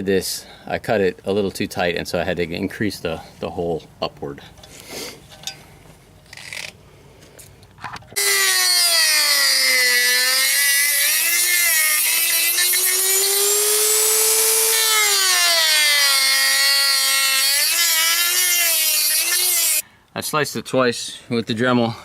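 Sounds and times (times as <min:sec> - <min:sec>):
rotary tool cutting plastic: 0:08.2 - 0:19.8.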